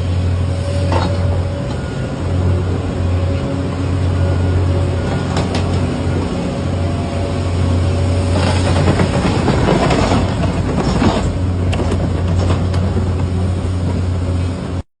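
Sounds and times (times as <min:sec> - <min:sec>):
diesel engine droning: 0:00.0 - 0:14.8
scraping and crunching ground: 0:08.2 - 0:13.3.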